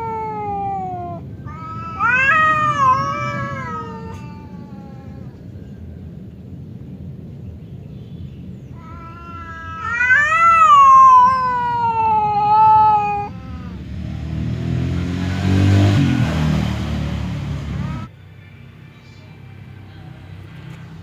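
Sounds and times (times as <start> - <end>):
cat growling: 0.0 - 5.5, 8.8 - 14.0, 17.7 - 18.1
cat yowling: 0.0 - 5.5, 8.7 - 14.0, 17.7 - 18.1.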